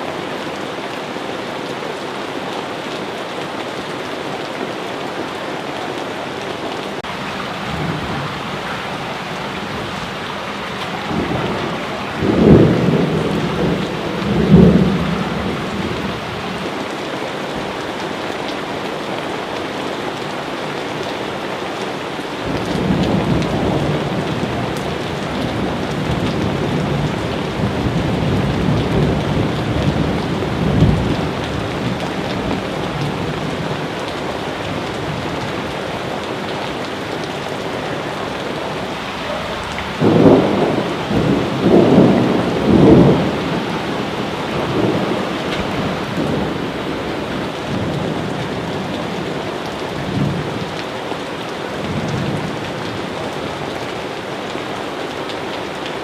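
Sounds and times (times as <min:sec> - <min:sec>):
heavy rain: 0:00.0 - 0:56.0
rolling thunder: 0:07.1 - 0:16.7, 0:37.8 - 0:48.9.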